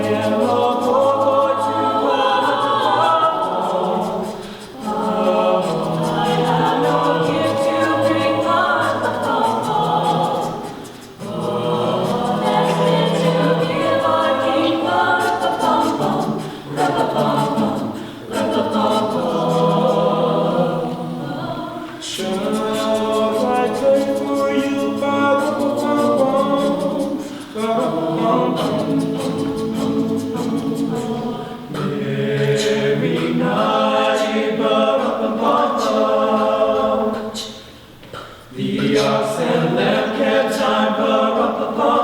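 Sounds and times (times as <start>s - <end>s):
choir singing a cappella: 0.0s - 42.0s
singers breathing: 4.3s - 4.8s, 18.0s - 18.3s.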